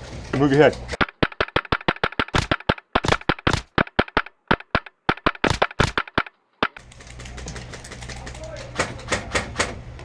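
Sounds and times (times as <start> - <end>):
airsoft rifles firing: 1.0 - 6.9.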